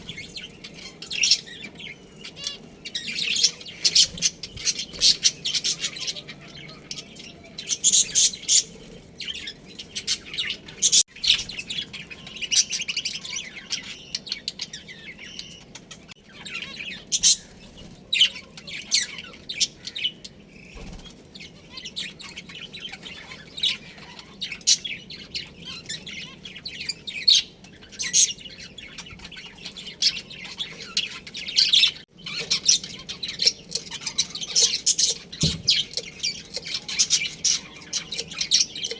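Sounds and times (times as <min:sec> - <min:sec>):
budgerigars chattering: 0:00.0 - 0:38.9.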